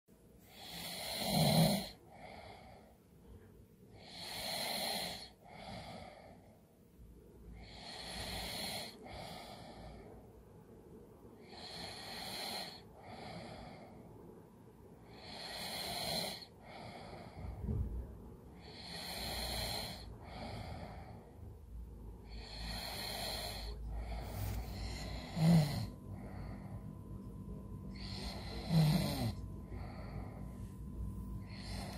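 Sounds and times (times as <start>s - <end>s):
person snoring: 0.5s - 2.9s, 4.0s - 6.4s, 7.6s - 10.0s, 11.4s - 14.0s, 15.1s - 17.5s, 18.6s - 21.2s, 22.2s - 26.8s, 27.9s - 30.6s, 31.4s - 31.9s.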